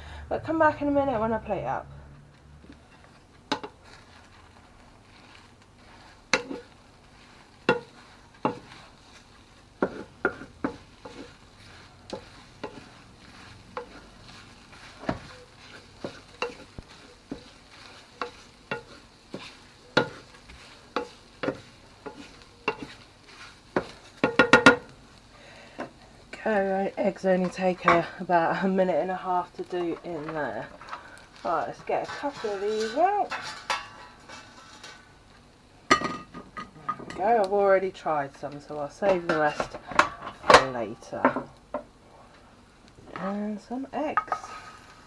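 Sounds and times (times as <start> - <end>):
eggs sizzling in pan: 0.0 - 45.0
utensil scraping pan: 2.6 - 24.9, 26.4 - 35.2, 38.4 - 41.5, 43.2 - 45.0.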